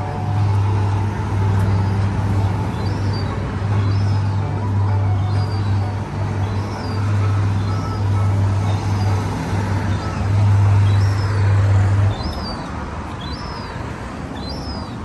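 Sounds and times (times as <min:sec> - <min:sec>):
kiddie ride motor hum: 0:00.0 - 0:15.0
high falling chirps: 0:05.2 - 0:15.0.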